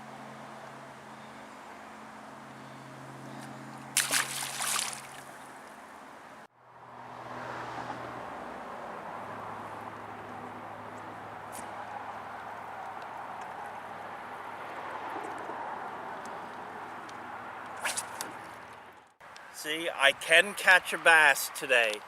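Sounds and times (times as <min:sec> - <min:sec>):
river water flowing: 0:00.0 - 0:14.2, 0:15.6 - 0:19.4
water splashing and sloshing: 0:03.7 - 0:06.1, 0:17.7 - 0:19.1.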